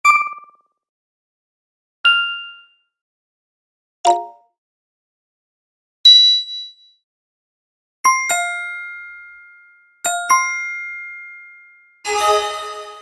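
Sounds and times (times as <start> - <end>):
two-note bell-like chime: 8.4 - 13.0
chime chord ringing: 12.0 - 13.0.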